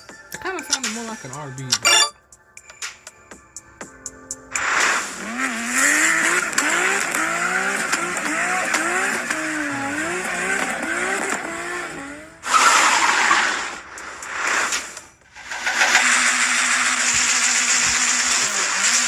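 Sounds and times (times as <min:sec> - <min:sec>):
rally car engine revving: 0:04.5 - 0:19.0.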